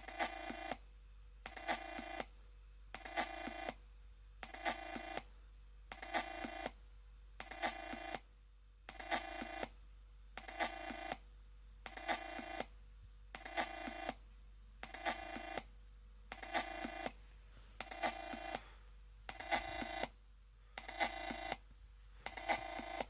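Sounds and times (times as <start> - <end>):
laptop buzzy ringing pulses: 14.9 - 15.6, 16.3 - 17.1, 17.8 - 18.6, 19.3 - 20.2, 20.8 - 21.6, 22.2 - 23.0.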